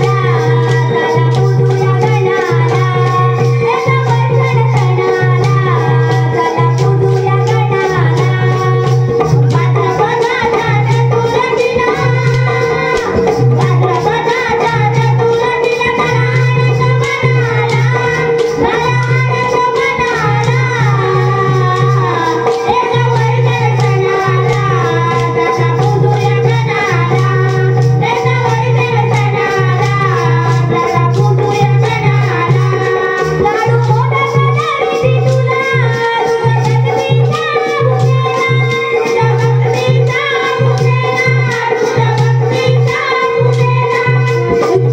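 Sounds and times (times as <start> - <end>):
pulsing bass line: 0.0 - 34.1
person singing: 0.0 - 44.9
rattling percussion: 0.0 - 44.9.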